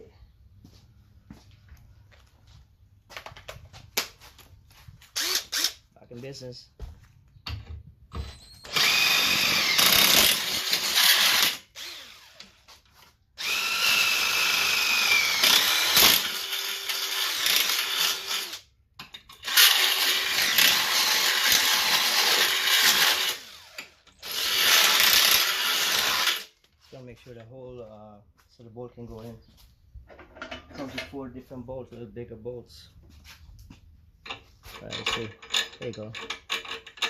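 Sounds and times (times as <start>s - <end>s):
drill whining through steel: 5.1s - 5.8s, 8.1s - 12.7s, 13.4s - 18.7s, 19.4s - 26.6s.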